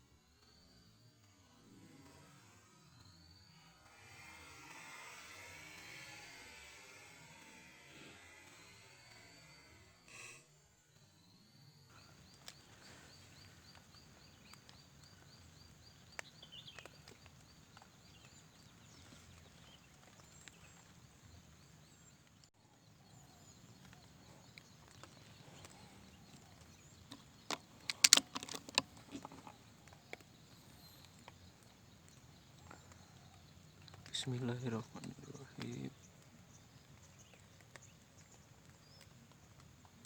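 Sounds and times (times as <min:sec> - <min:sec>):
faint countryside ambience: 0:00.0 - 0:40.0
rapid even ticking: 0:23.6 - 0:40.0
sharp clicks and knocks: 0:26.4 - 0:30.3.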